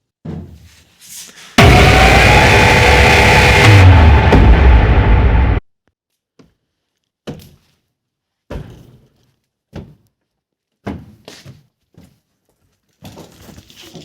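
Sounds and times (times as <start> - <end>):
loud music: 1.6 - 5.6.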